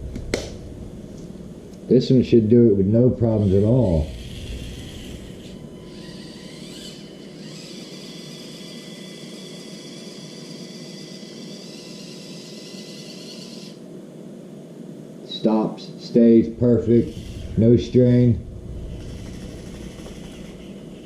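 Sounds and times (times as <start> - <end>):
small electric motor whining: 3.2 - 13.8, 16.8 - 21.0.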